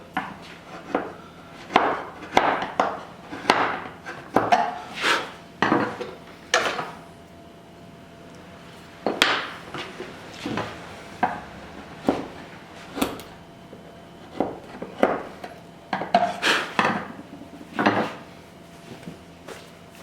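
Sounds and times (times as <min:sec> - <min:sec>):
chisel scraping wood: 0:00.6 - 0:06.9.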